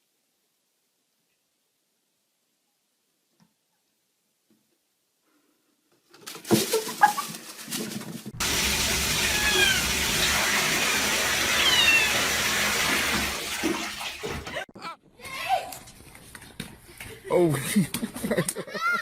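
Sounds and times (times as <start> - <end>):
cat meowing: 9.2 - 10.0, 11.4 - 12.2.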